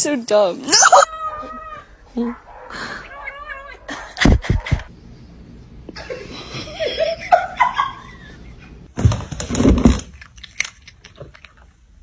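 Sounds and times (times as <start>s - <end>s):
clattering rustling noise: 8.9s - 11.7s.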